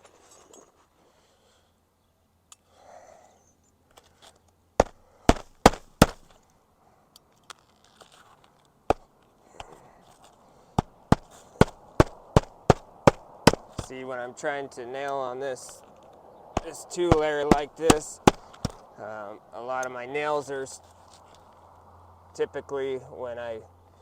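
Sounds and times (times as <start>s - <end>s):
hatchet hammering nails into shingles: 4.8s - 6.3s, 10.8s - 13.9s, 16.6s - 18.8s.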